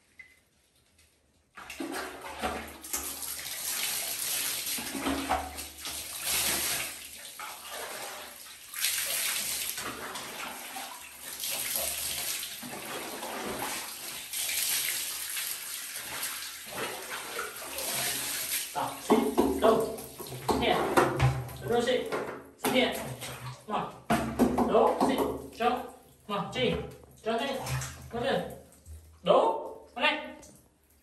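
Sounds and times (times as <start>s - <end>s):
water spraying from hand sprayer: 5.9s - 7.0s.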